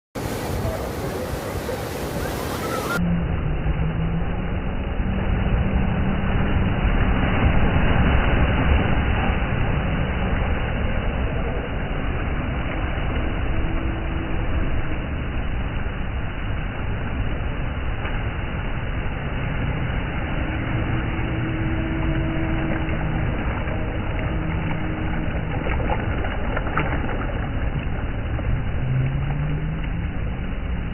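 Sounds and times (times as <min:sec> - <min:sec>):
low engine hum: 0:00.2 - 0:30.9
waves splashing against rock: 0:17.9 - 0:30.7.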